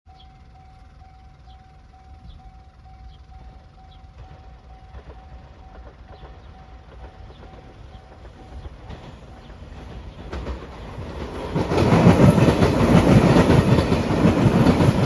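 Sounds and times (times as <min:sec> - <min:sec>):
level crossing alarm ringing: 0:00.1 - 0:06.9
train wheels clattering: 0:03.4 - 0:15.0.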